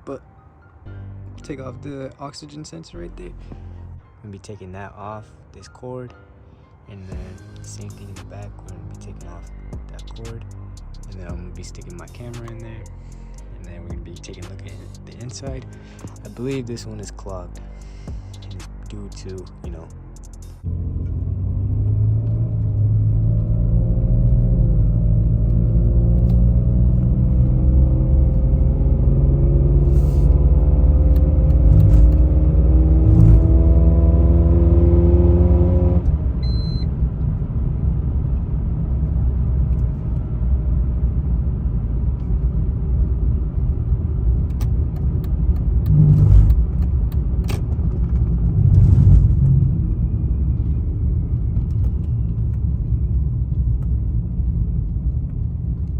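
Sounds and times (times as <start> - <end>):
car engine revving under load: 20.6 - 38.6, 44.3 - 52.8.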